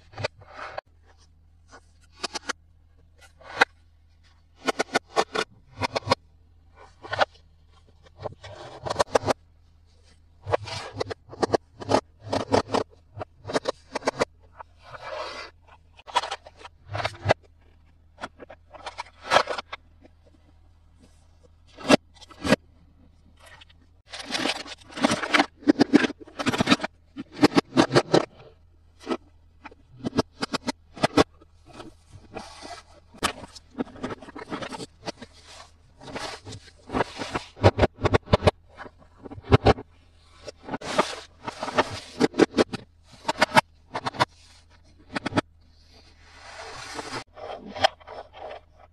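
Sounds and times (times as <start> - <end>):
packaging scraping and rustling: 23.5 - 28.2
plastic toys clicking and tapping: 23.6 - 28.3
packaging rustling scrapes: 45.8 - 48.6.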